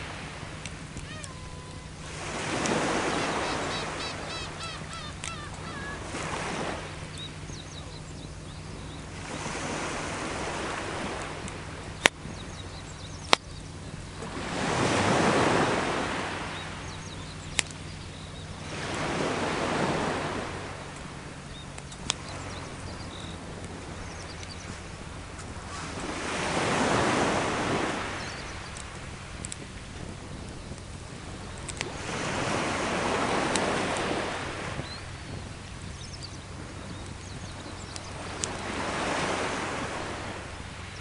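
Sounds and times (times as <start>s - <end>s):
sea waves washing ashore: 0.0s - 41.0s
campfire crackling pops: 10.8s - 12.4s, 13.2s - 14.4s, 17.5s - 17.8s, 21.7s - 22.2s, 28.7s - 30.9s, 31.5s - 32.1s.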